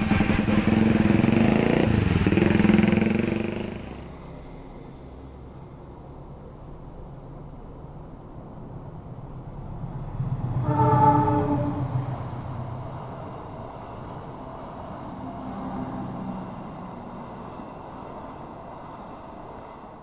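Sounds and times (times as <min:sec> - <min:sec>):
train rumbling: 0:00.0 - 0:20.0
locomotive horn blast: 0:10.6 - 0:12.4.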